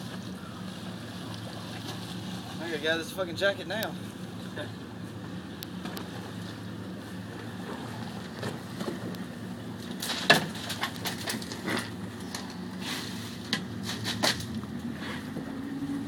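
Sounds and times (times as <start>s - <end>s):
boat engine idling: 0.0s - 16.0s.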